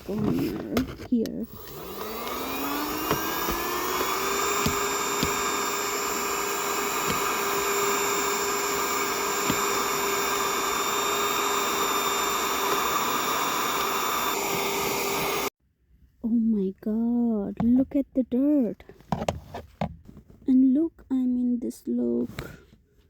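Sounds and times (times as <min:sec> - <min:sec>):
mini vacuum cleaner whine: 0:00.0 - 0:15.5.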